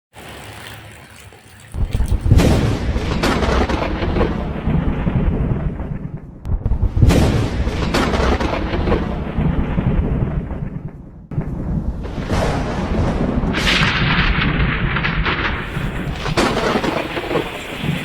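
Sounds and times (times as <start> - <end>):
rain: 0.2 - 3.6, 15.0 - 18.0
thunder rumbling: 1.8 - 18.0.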